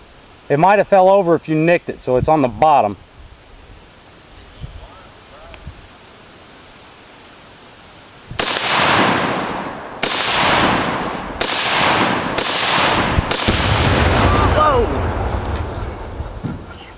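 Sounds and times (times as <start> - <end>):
echoing gunshots: 8.4 - 16.4.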